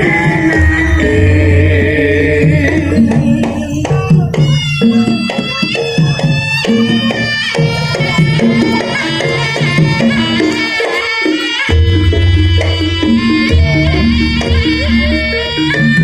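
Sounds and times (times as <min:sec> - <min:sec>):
drum strokes: 0:00.0 - 0:16.0
deep low note: 0:00.2 - 0:04.1
melody of long held notes: 0:11.7 - 0:16.0.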